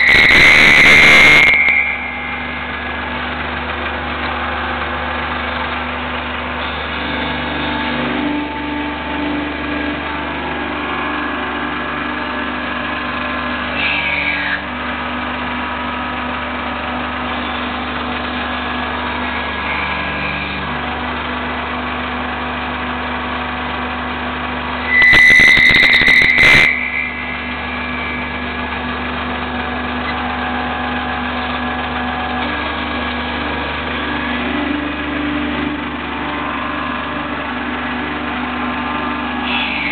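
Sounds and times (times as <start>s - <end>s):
shrill high-pitched burst: 0.0s - 3.1s, 24.9s - 27.7s
lathe mechanical hum: 0.0s - 39.9s.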